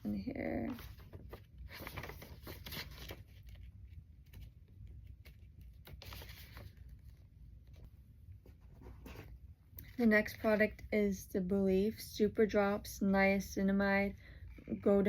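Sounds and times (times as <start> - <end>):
paper and packaging rustling: 0.1 - 7.9.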